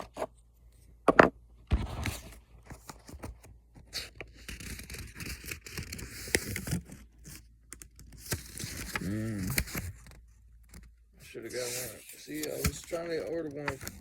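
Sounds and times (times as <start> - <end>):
packaging scraping and rustling: 3.9 - 7.4, 8.0 - 10.2, 11.5 - 14.0.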